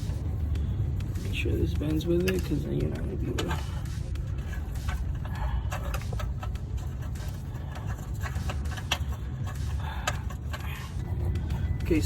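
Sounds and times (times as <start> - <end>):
sensor wire clicks and taps: 0.6 - 11.6.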